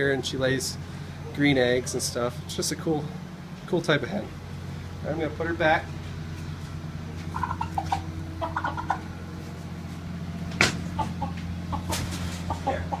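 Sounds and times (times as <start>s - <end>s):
chickens clucking: 0.0s - 3.2s, 5.9s - 13.0s
steady low hum: 0.0s - 13.0s.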